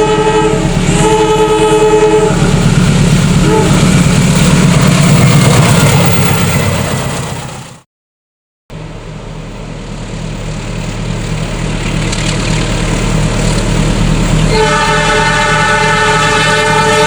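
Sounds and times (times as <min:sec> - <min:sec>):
multi-tone train horn: 0:00.0 - 0:02.6, 0:03.4 - 0:04.0, 0:14.5 - 0:17.0
train engine and rail noise: 0:00.0 - 0:07.8, 0:08.7 - 0:17.0.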